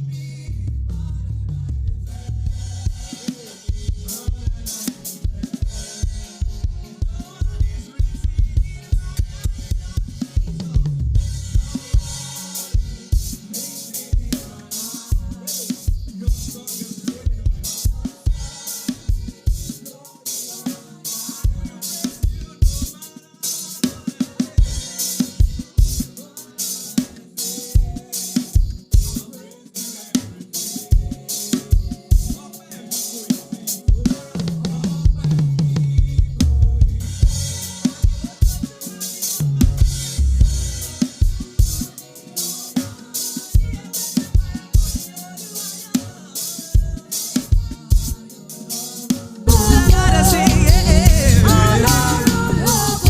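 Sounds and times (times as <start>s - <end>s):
bass line: 0.0s - 3.1s, 6.5s - 12.9s, 34.6s - 38.6s, 39.4s - 41.0s, 49.5s - 53.0s
kick drum: 6.4s - 12.1s, 35.9s - 38.6s.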